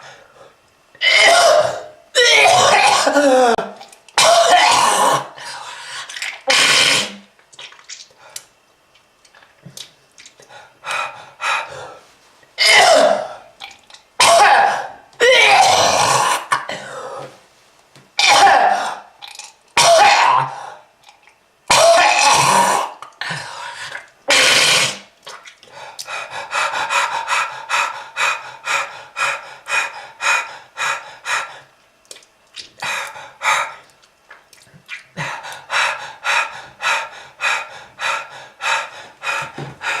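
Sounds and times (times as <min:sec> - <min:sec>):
person coughing hard: 0:01.0 - 0:05.4, 0:12.6 - 0:13.4, 0:14.2 - 0:17.0, 0:18.2 - 0:19.0, 0:19.8 - 0:20.6, 0:21.7 - 0:23.0, 0:24.3 - 0:25.0.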